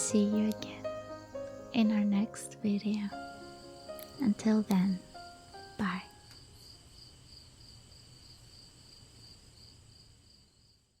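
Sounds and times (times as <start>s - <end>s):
pulsing insect chirp: 0.0s - 11.0s.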